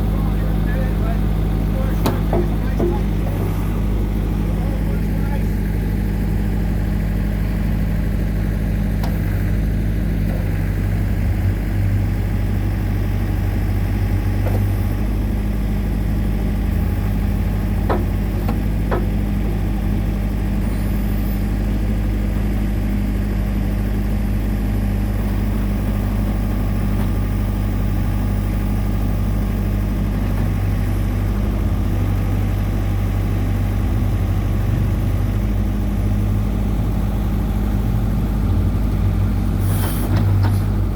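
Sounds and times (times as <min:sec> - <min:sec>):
diesel engine running: 0:00.0 - 0:40.9
sharp knocks: 0:02.0 - 0:03.5, 0:17.8 - 0:19.2.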